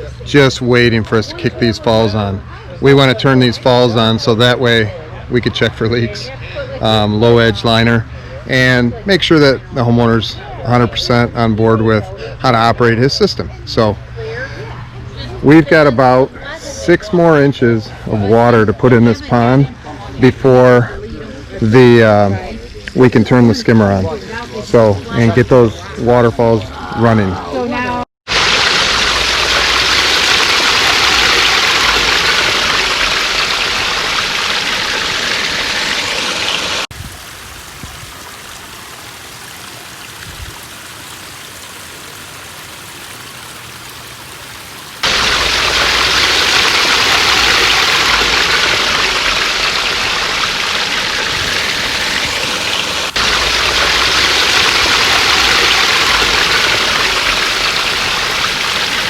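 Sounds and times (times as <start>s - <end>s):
water rushing over rocks: 28.3s - 59.0s.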